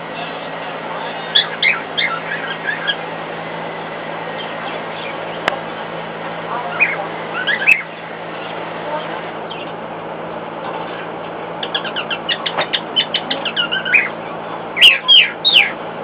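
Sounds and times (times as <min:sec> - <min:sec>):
cockatiel chirping and whistling: 0:01.2 - 0:03.0, 0:06.8 - 0:07.9, 0:11.6 - 0:14.1, 0:14.8 - 0:15.8.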